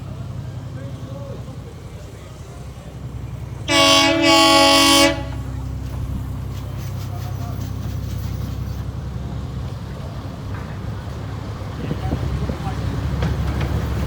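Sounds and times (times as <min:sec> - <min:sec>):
locomotive engine rumbling: 0:00.0 - 0:14.0
locomotive horn: 0:03.6 - 0:05.7.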